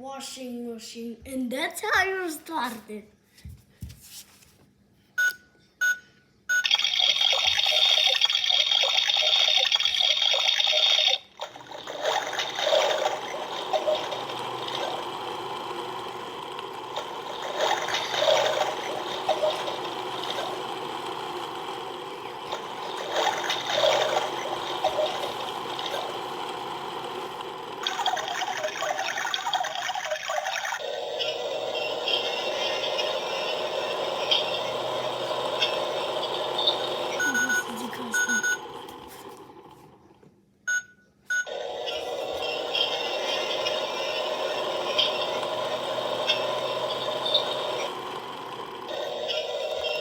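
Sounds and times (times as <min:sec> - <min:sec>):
small motor whirring: 0:06.6 - 0:40.1, 0:41.3 - 0:50.0
button beeps: 0:37.2 - 0:38.6.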